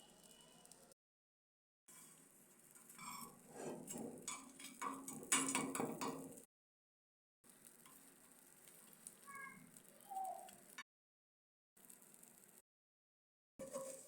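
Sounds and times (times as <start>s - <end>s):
irregular clicks and crackles: 2.0s - 6.5s, 7.5s - 10.9s, 11.8s - 12.6s.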